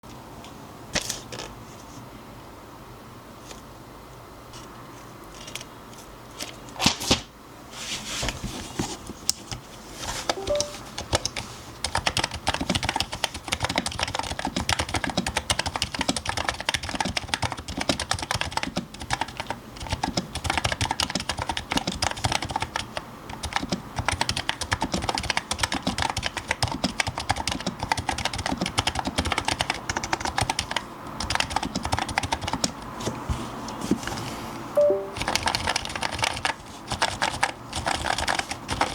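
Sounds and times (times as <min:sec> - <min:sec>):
keyboard typing: 0:10.3 - 0:32.8, 0:34.8 - 0:38.9.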